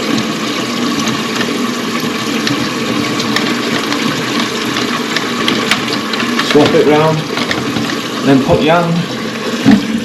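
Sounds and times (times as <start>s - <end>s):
toilet cistern filling: 0.0s - 10.0s.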